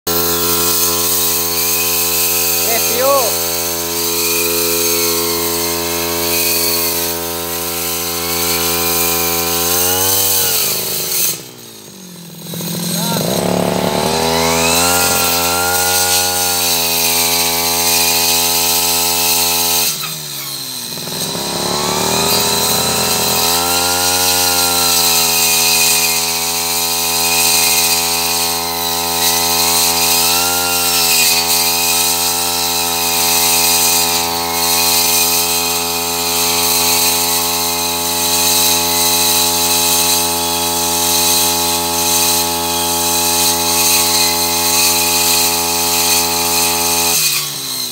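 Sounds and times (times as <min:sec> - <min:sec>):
brush cutter saw cutting wood: 0:00.0 - 0:47.9.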